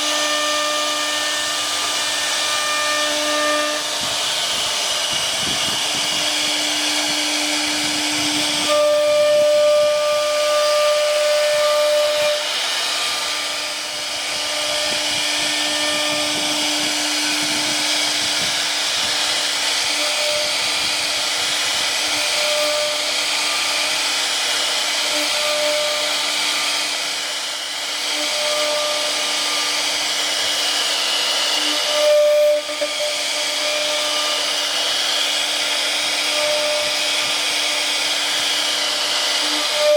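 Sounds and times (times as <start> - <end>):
cnc machine cutting: 0.0 - 39.9
whining spindle tone: 0.0 - 39.9.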